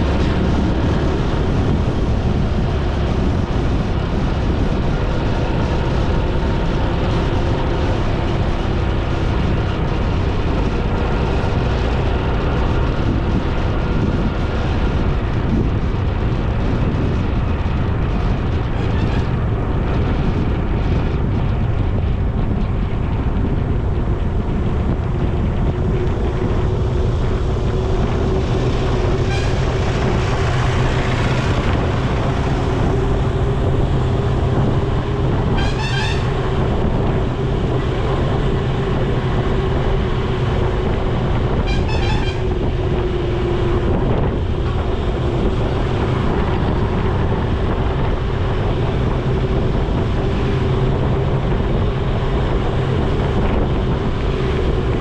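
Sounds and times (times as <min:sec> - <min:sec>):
vehicle hum: 0:00.0 - 0:55.0
wind rush: 0:00.0 - 0:55.0
vehicle horn beeps: 0:35.5 - 0:36.4, 0:41.6 - 0:42.5.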